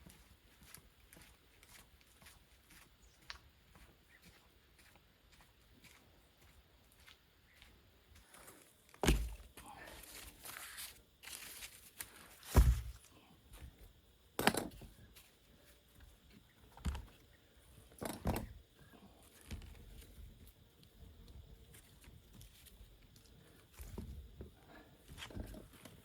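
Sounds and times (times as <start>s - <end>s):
rustling and crinkling: 8.2s - 13.7s, 19.2s - 26.0s.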